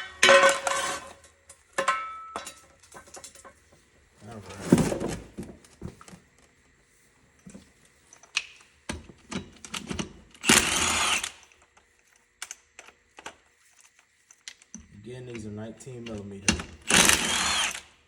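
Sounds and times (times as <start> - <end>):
metal tools clicking and knocking: 0.2 - 3.6
power tool burst: 10.4 - 11.4, 16.8 - 18.0.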